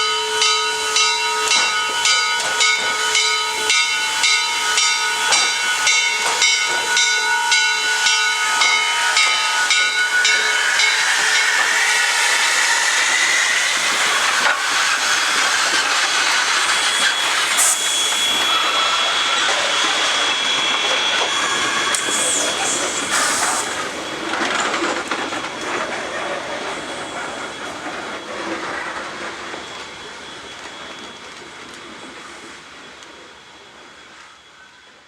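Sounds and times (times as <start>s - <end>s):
steam locomotive chime whistle: 0.0s - 24.8s
steam locomotive exhaust chuffs: 0.0s - 34.2s
hiss of steam: 0.2s - 35.0s.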